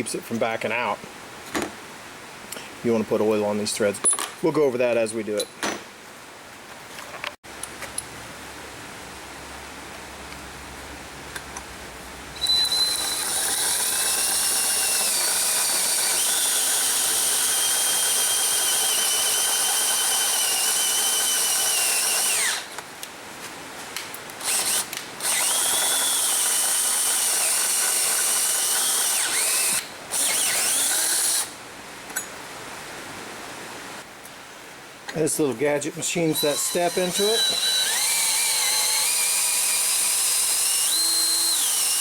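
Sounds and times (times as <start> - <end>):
electric drill whining: 12.4 - 22.7, 24.4 - 31.6, 36.3 - 42.0.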